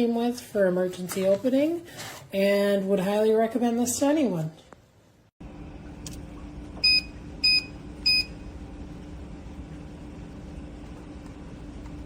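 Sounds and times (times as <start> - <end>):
steady low hum: 5.4 - 12.0.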